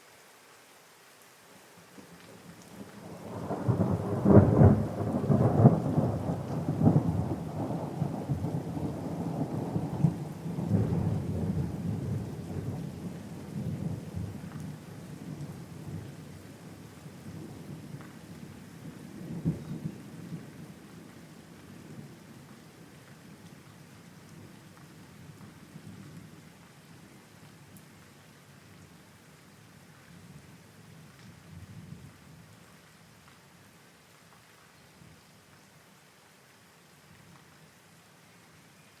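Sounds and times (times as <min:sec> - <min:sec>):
steady rain: 0:00.0 - 0:39.0
thunder rumbling and cracking: 0:03.0 - 0:12.8.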